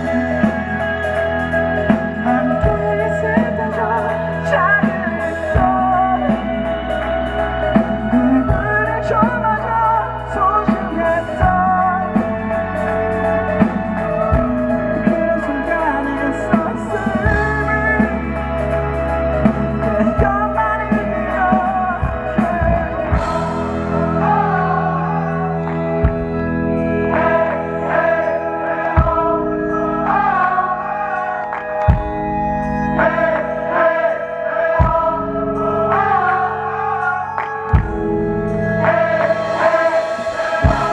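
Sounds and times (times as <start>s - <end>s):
person singing: 0.0s - 26.3s
live rock band playing: 0.0s - 40.9s.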